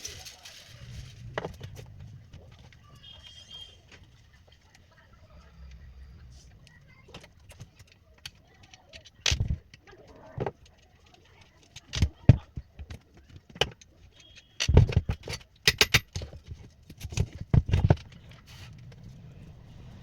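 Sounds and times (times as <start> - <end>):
metallic clinks and knocks: 13.5 - 18.2.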